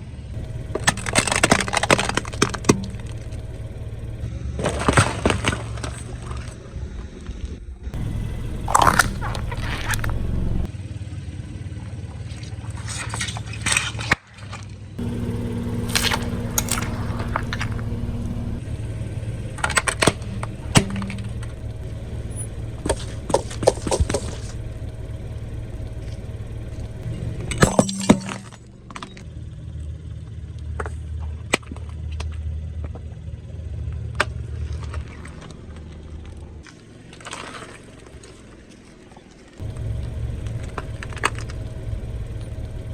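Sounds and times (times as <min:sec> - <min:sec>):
car rumble: 0:00.0 - 0:42.9
tyres crushing brittle objects: 0:00.7 - 0:03.4, 0:08.4 - 0:10.2, 0:12.8 - 0:18.2.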